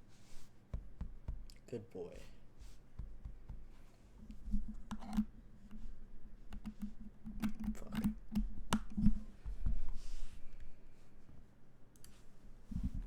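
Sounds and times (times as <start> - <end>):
mechanical keyboard keystrokes: 6.6 - 9.0.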